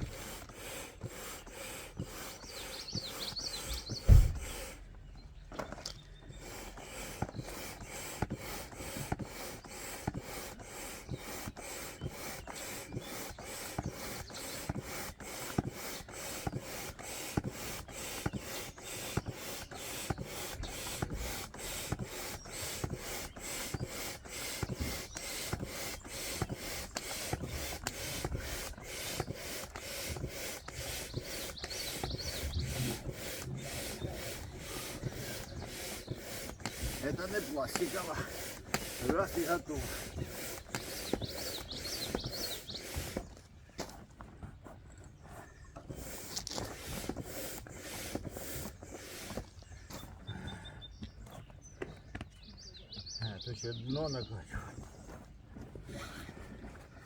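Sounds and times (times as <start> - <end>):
hand air pump strokes: 0.0 - 50.6, 51.3 - 57.0
thump: 4.0 - 4.6.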